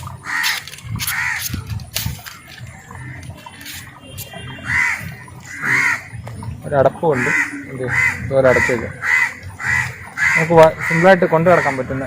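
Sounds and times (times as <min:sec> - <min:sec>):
crow cawing: 0:00.2 - 0:01.6, 0:04.5 - 0:06.5, 0:07.1 - 0:12.0.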